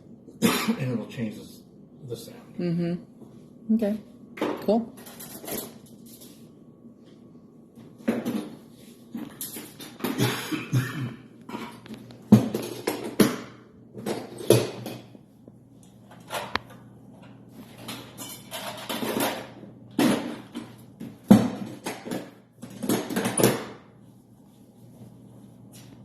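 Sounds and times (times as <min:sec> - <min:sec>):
objects clattering and rustling: 0:04.4 - 0:06.6, 0:07.8 - 0:15.2, 0:16.0 - 0:23.8.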